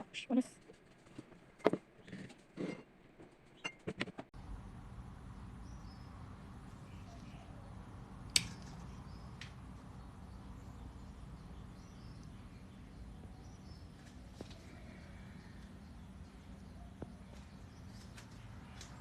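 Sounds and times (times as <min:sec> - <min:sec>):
steady low hum: 0:04.4 - 0:19.0.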